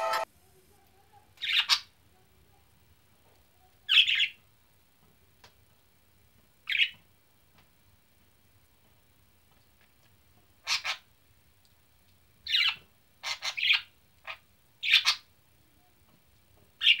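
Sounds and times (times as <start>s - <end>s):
bird chirping: 12.5s - 15.2s.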